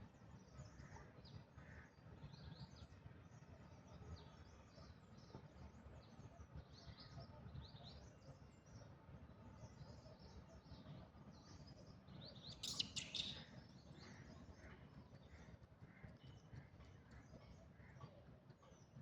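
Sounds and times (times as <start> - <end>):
faint bird chirps: 12.3 - 14.8
sharp high bird calls: 12.5 - 13.5.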